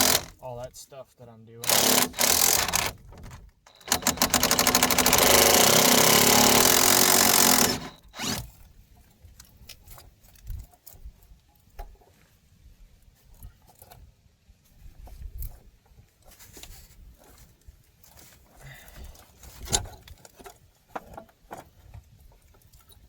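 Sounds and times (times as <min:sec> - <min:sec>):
impact wrench hammering: 0:00.0 - 0:00.4, 0:01.6 - 0:03.0, 0:03.7 - 0:08.4
tools clicking and knocking: 0:00.0 - 0:00.4, 0:01.6 - 0:08.4.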